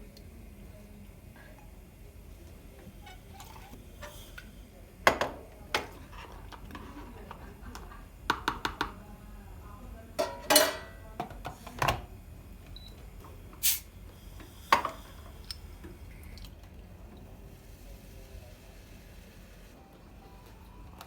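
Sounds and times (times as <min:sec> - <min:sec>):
dishes and utensils clinking: 0:02.8 - 0:04.2, 0:10.2 - 0:12.0.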